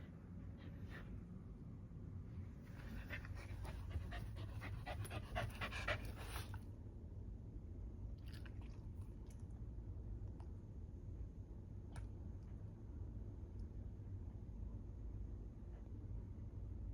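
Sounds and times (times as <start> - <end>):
low steady hum: 0.0 - 16.9
dog panting: 2.8 - 6.6.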